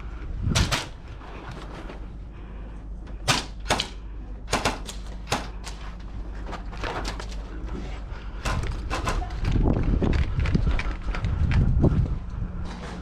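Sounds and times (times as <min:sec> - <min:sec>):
steady low background noise: 0:00.0 - 0:13.0
airsoft guns firing: 0:03.2 - 0:05.8.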